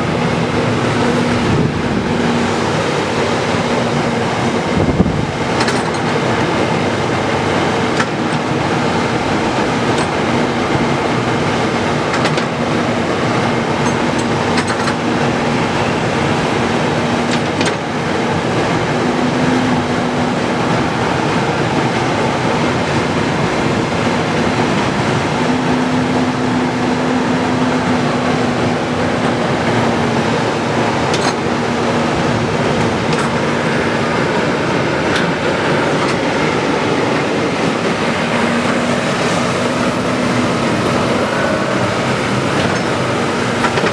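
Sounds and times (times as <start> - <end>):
excavator engine running: 0.0 - 43.9.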